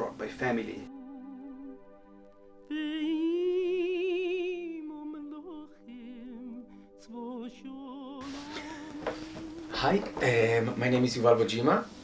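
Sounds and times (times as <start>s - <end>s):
person singing with vibrato: 2.7s - 10.6s.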